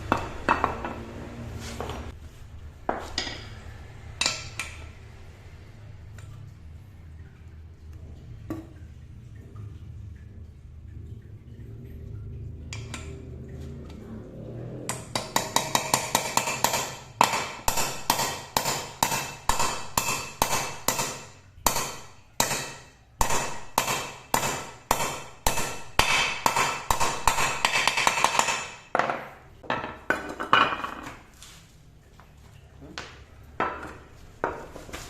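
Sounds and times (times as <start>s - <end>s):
hammer striking metal: 14.9s - 29.2s.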